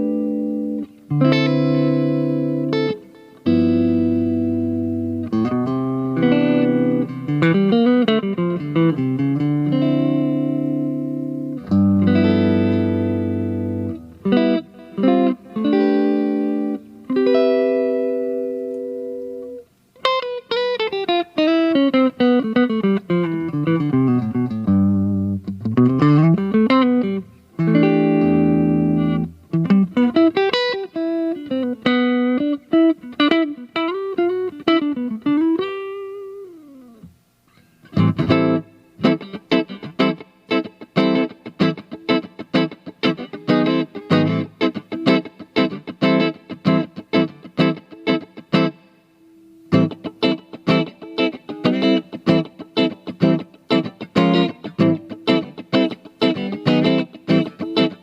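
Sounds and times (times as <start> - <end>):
electric guitar chords and runs: 0.0 - 19.6, 49.7 - 58.0.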